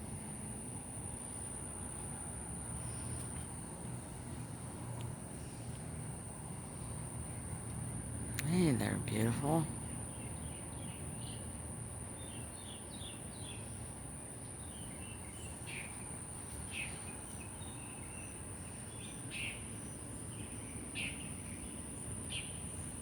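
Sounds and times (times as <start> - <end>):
bird chirping: 12.2 - 13.8.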